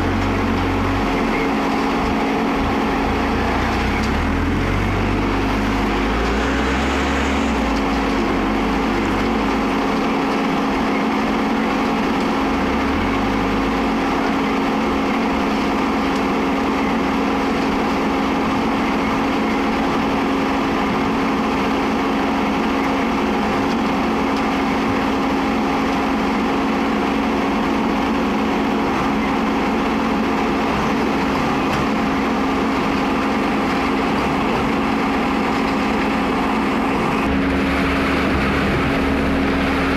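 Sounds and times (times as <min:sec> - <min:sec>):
diesel engine running: 0:00.0 - 0:39.9.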